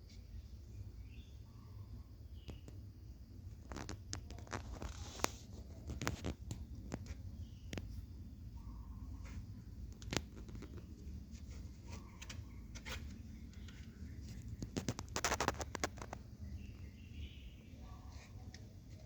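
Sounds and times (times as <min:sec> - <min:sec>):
scratching clicks: 0:12.2 - 0:16.3.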